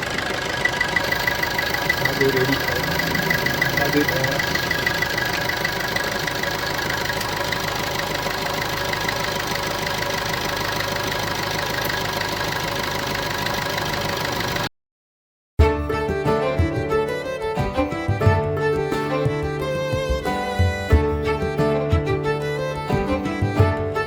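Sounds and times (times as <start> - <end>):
diesel engine idling: 0.0 - 14.7
music with violin: 2.0 - 5.0, 15.6 - 24.0.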